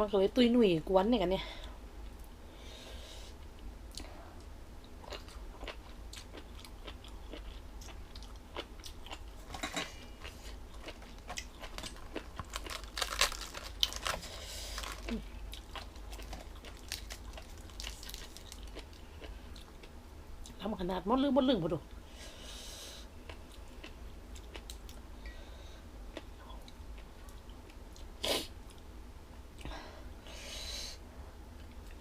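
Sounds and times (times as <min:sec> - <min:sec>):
person chewing crunchy food: 0:04.8 - 0:20.6, 0:23.2 - 0:25.0.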